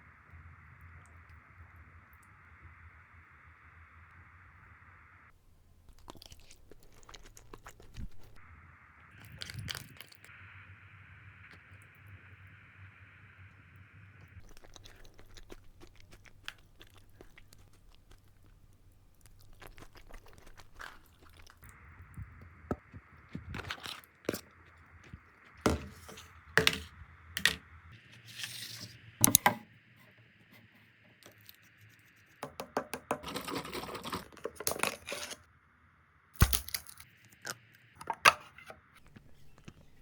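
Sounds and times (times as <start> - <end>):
faint steady hiss: 0.0 - 32.4.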